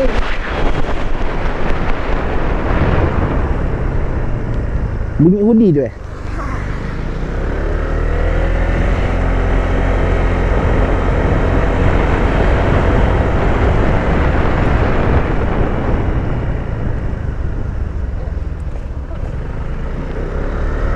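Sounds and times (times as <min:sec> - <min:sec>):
wind rush: 0:00.0 - 0:05.2, 0:06.0 - 0:19.6
scooter engine: 0:06.0 - 0:13.4, 0:16.3 - 0:20.9.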